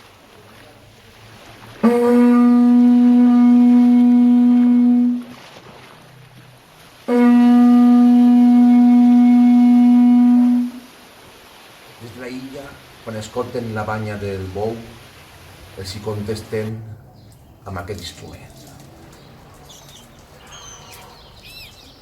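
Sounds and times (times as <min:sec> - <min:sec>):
bull's horn blasts: 0:01.8 - 0:05.3, 0:07.1 - 0:10.8.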